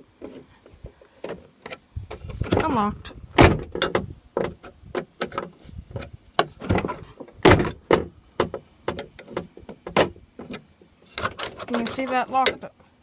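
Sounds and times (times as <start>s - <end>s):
screwdriver scraping in lock: 11.1s - 12.6s.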